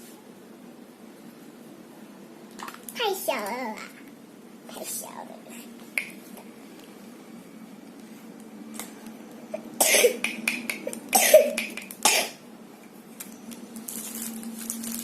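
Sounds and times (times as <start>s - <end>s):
child coughing: 9.8s - 10.3s, 11.1s - 12.4s.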